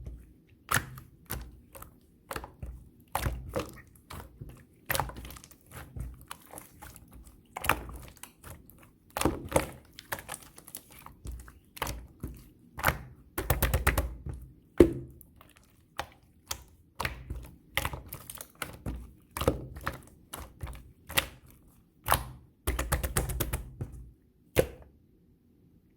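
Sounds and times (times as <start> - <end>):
slime crackling: 0.0 - 14.3.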